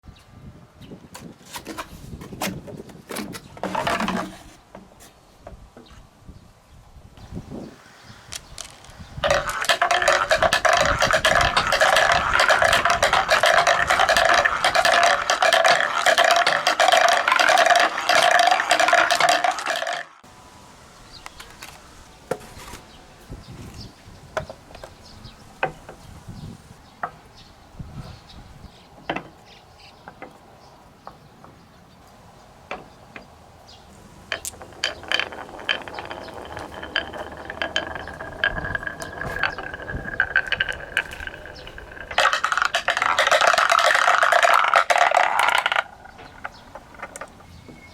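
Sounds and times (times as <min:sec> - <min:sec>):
marbles clattering down wooden tracks: 0:03.6 - 0:04.6, 0:08.3 - 0:20.3, 0:33.9 - 0:47.9.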